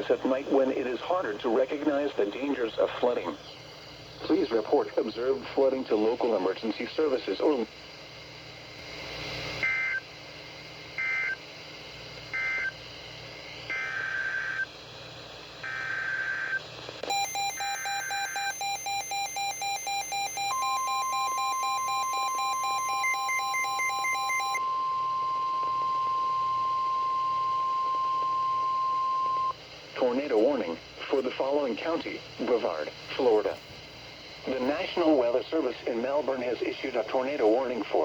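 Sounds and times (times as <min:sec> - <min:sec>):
steady warning alarm tone: 0:15.6 - 0:29.6
warbling data tone bursts: 0:15.7 - 0:29.5
rapid repeating beeps: 0:16.3 - 0:24.6.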